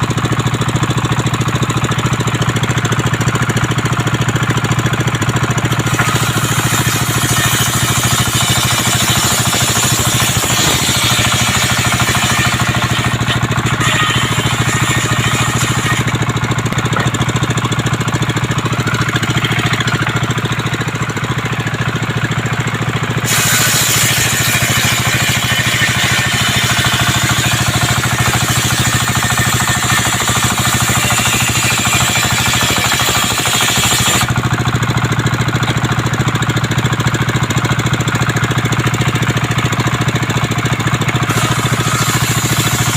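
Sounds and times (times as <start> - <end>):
sawmill engine hum: 0.0 - 42.9
saw blade hissing: 5.8 - 17.3, 23.2 - 34.3, 41.3 - 42.9.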